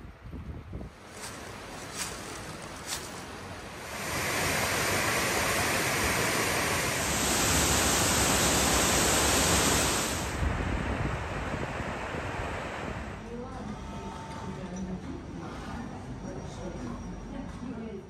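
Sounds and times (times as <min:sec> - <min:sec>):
water rushing: 0:01.0 - 0:13.2.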